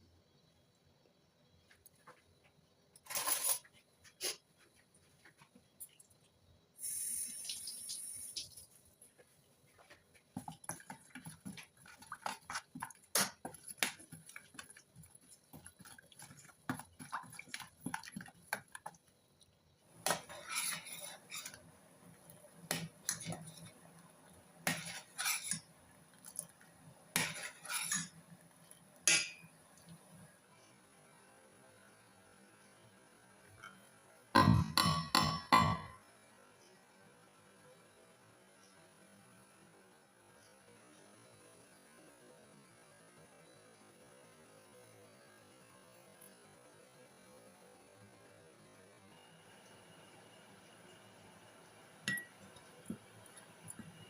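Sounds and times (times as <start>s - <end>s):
spoon clinking against bowl: 52.1s - 52.3s.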